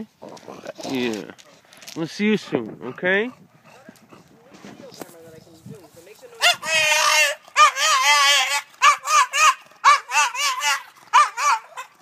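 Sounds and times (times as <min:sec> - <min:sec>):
dog crying high-pitched: 0:06.4 - 0:12.0
dog yelping: 0:06.4 - 0:12.0.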